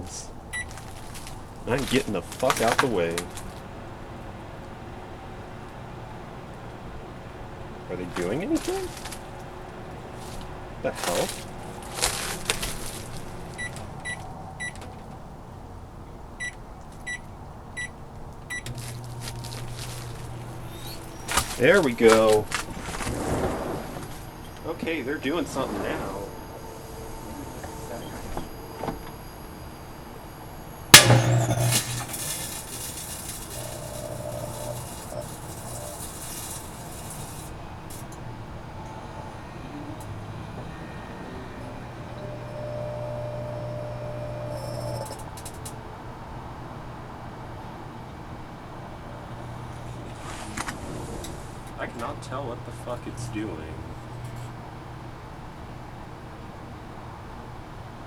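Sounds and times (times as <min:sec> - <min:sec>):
microwave keypad beeping: 0:00.0 - 0:03.6, 0:11.1 - 0:14.8, 0:16.4 - 0:22.8, 0:24.3 - 0:37.5, 0:41.7 - 0:45.4
crackling: 0:00.0 - 0:45.8, 0:48.6 - 0:55.2
microwave running hum: 0:00.0 - 0:58.0
light bulb bursting: 0:18.6 - 0:38.2, 0:42.1 - 0:45.3.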